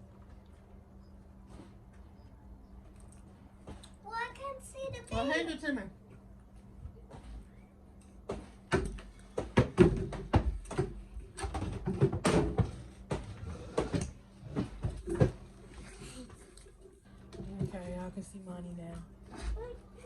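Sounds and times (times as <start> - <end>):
knocks and thumps: 8.2 - 15.5.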